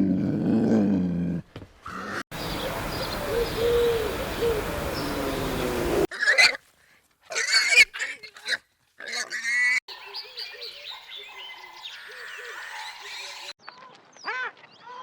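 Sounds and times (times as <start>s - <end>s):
chorus of small animal calls: 1.9s - 6.6s
loud animal calls: 1.9s - 6.6s.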